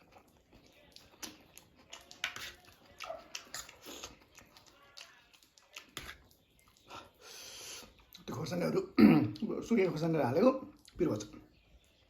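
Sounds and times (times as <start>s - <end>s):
person chewing noodles: 0.0s - 8.4s.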